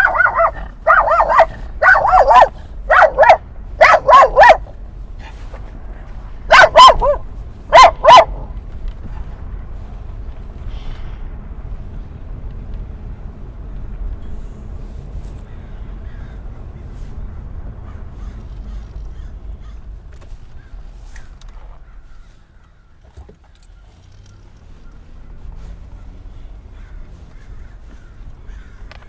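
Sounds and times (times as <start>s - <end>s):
dog barking: 0.0s - 5.5s, 6.4s - 8.6s
low vehicle rumble: 0.0s - 29.0s.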